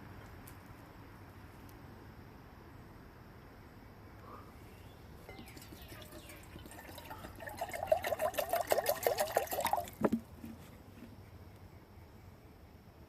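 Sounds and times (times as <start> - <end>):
water pouring and gurgling: 5.3 - 10.3.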